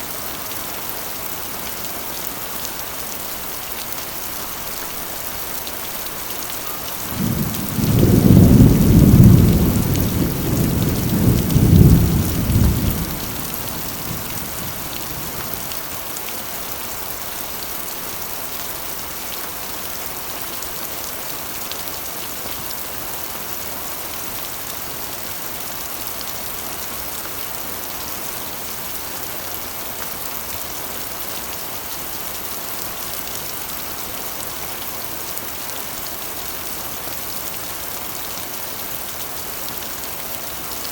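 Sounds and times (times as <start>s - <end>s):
rain on a metal roof: 0.0s - 40.9s
thunder rumbling: 7.0s - 15.7s.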